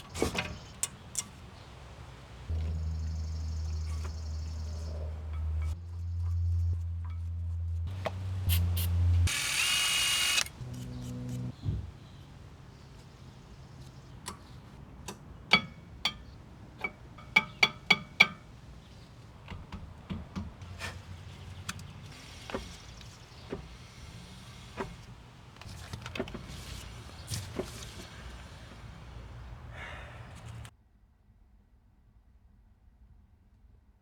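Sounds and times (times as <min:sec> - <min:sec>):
brakes clicking metallically: 0:00.0 - 0:30.7
car moving hum: 0:01.7 - 0:30.7.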